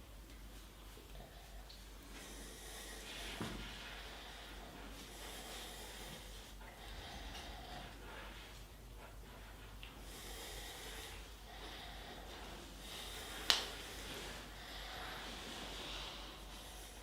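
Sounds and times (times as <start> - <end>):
hands rubbing skin: 13.1 - 14.4.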